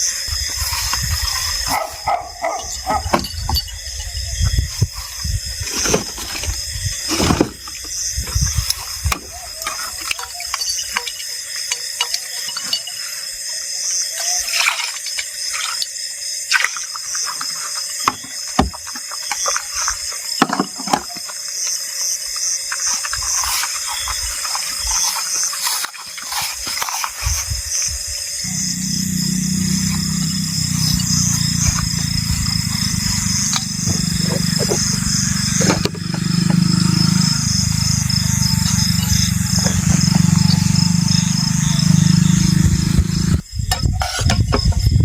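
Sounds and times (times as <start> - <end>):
water splashing and running: 14.6 - 18.0.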